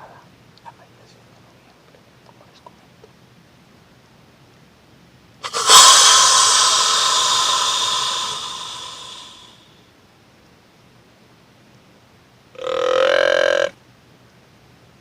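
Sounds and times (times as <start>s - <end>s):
deer call hissing wheeze: 5.4s - 9.6s
deer call snort puffs: 5.4s - 9.6s.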